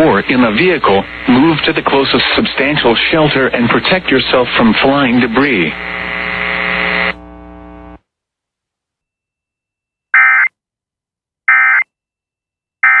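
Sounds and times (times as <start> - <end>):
faint hum: 0.0 - 8.0.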